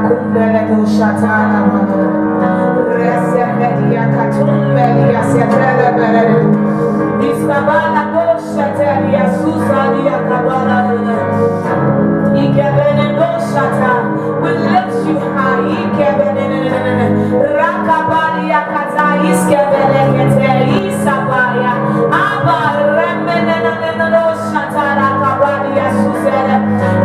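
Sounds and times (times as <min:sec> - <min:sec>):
held instrumental chords: 0:00.0 - 0:27.0
person singing: 0:00.0 - 0:27.0
low bass line: 0:01.2 - 0:07.4.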